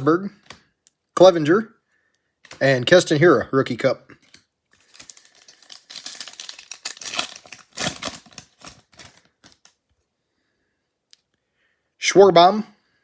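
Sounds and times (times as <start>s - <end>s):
cards rustling and clicking: 0.3s - 0.7s, 2.4s - 2.9s, 4.1s - 9.9s
foil wrapper crinkling and tearing: 4.2s - 9.8s.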